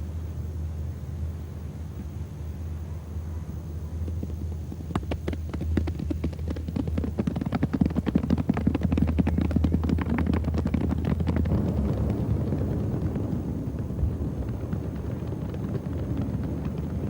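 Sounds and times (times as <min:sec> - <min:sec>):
low rumble: 0:09.5 - 0:17.0.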